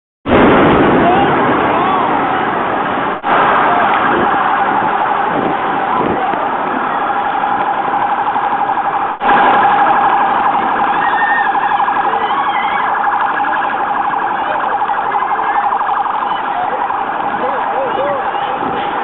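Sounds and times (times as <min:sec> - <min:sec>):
fast-pulsing electronic alarm: 0:07.1 - 0:19.0.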